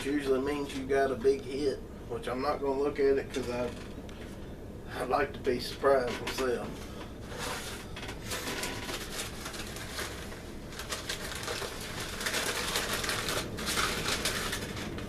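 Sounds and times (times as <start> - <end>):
packing material rustling: 7.2 - 15.0.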